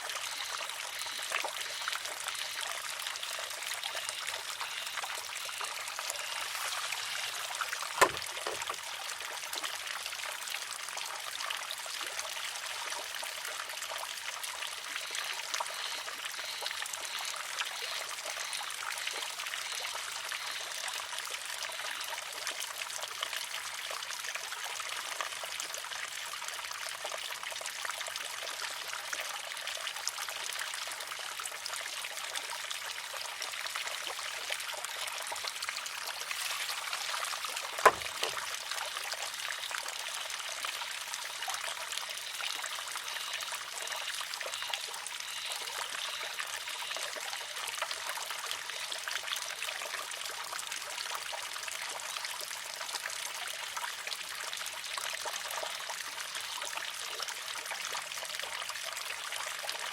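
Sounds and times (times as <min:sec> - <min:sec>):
water trickling: 0:00.0 - 0:59.9
bamboo arm clacking on rock: 0:06.3 - 0:08.8, 0:37.8 - 0:38.5.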